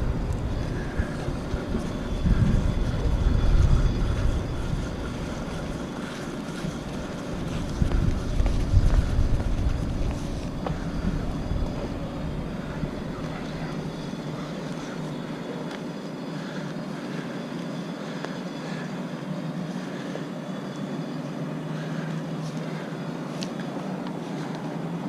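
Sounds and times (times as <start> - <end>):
low rumble: 0.0 - 14.3
engine droning: 0.0 - 25.0.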